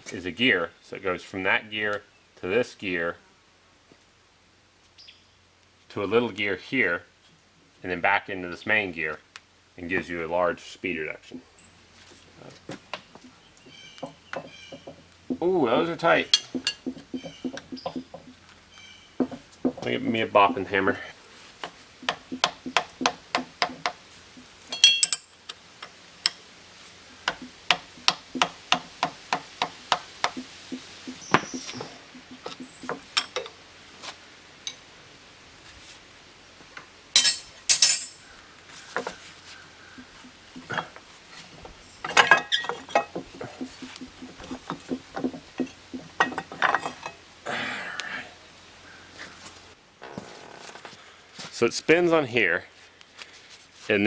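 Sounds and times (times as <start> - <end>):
hammer tapping on metal: 14.0 - 18.4, 19.2 - 20.7, 21.6 - 24.0, 27.2 - 33.5, 40.0 - 40.9.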